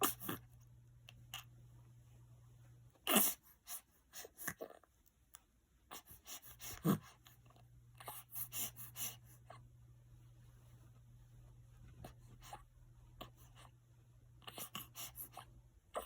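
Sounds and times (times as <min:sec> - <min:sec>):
baby snoring and grunting: 0:00.0 - 0:00.4, 0:03.0 - 0:03.5, 0:06.6 - 0:07.2.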